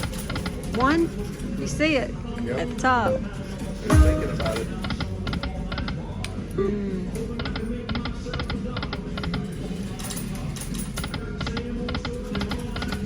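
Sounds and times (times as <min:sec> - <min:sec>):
low background din: 0:00.0 - 0:06.6.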